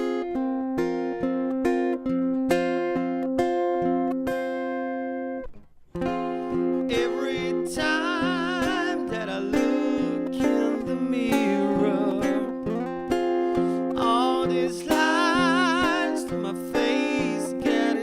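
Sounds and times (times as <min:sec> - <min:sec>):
person singing: 0:06.3 - 0:18.0.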